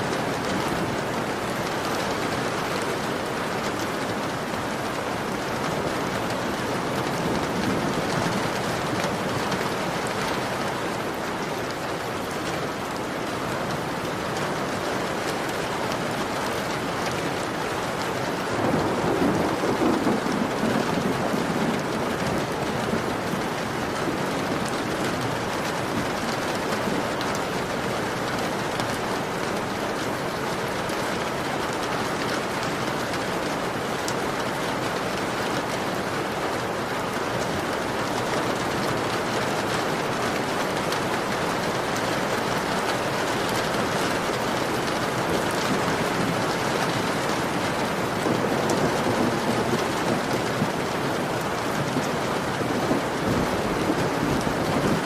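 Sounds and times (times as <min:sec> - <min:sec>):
heavy rain on a window: 0:00.0 - 0:55.0.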